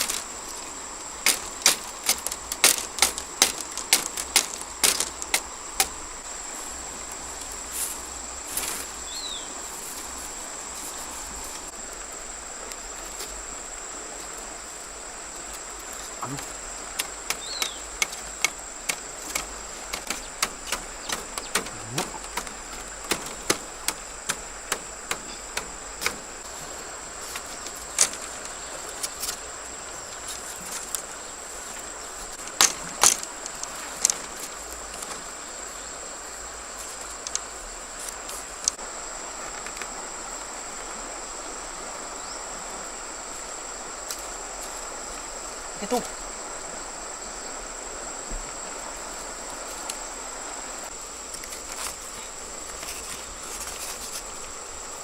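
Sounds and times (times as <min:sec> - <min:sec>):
insects droning: 0:00.0 - 0:55.0
sharp knocks: 0:16.3 - 0:26.3.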